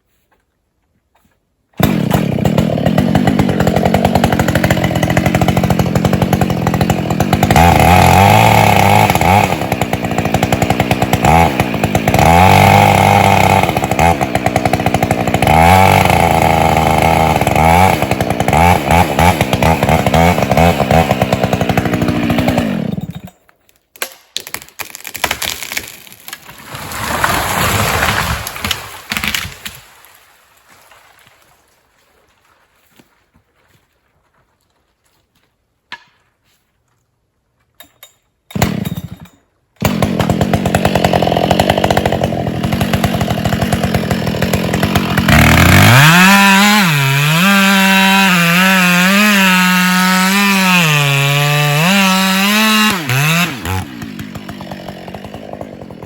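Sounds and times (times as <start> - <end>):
chainsaw revving: 1.8 - 23.3, 38.6 - 39.1, 39.8 - 56.0.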